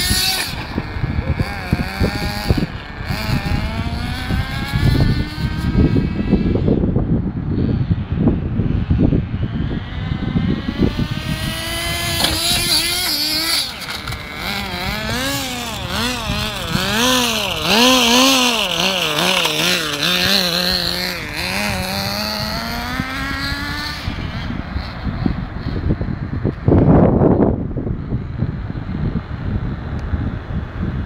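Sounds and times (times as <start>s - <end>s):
toy car motor revving: 0.0s - 6.6s, 9.8s - 25.8s.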